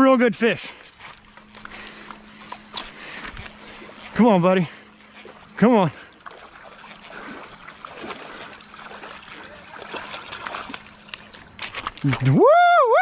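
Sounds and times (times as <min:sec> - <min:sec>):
creek water running: 0:00.0 - 0:13.0
fish splashing at water surface: 0:05.2 - 0:12.3.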